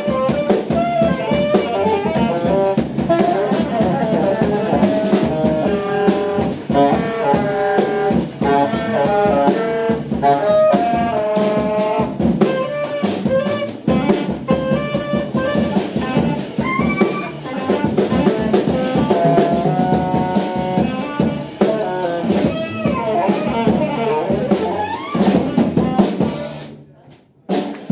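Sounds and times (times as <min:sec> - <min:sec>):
saxophone melody: 0:00.0 - 0:26.6
drum kit: 0:00.0 - 0:26.8, 0:27.4 - 0:27.9
bass: 0:00.0 - 0:27.9.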